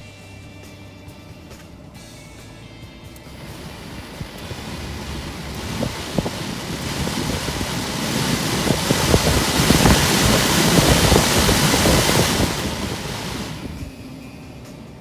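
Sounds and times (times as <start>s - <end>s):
fan clicking rattle: 3.0s - 15.0s
car fan whooshing: 3.1s - 15.0s.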